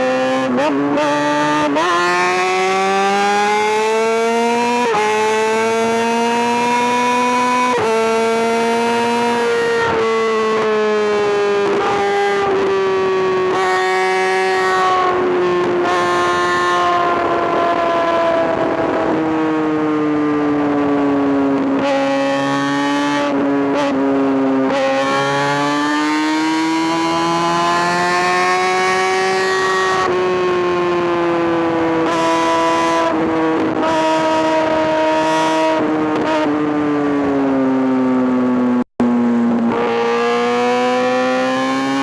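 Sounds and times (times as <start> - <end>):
motorcycle engine at high revs: 0.0 - 42.0.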